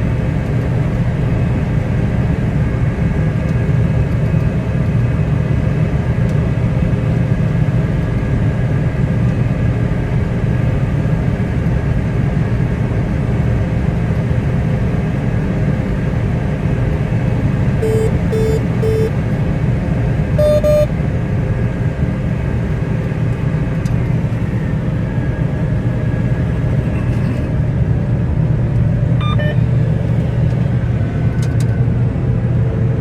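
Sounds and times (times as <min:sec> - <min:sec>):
large engine rumbling: 0:00.0 - 0:33.0
electronic beeps: 0:17.8 - 0:19.1, 0:20.4 - 0:20.9, 0:29.2 - 0:29.7.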